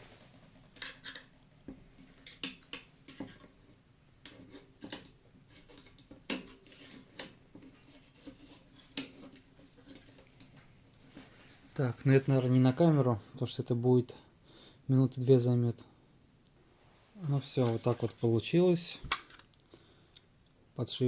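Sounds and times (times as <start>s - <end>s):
screwdriver metallic clicks and scrapes: 4.2s - 10.5s.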